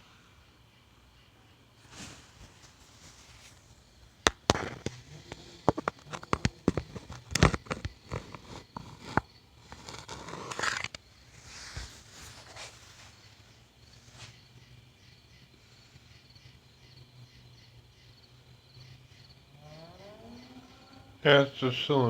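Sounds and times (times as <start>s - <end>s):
scraping rustle: 1.8s - 3.8s, 4.6s - 14.4s
sharp clicks and knocks: 4.3s - 11.0s.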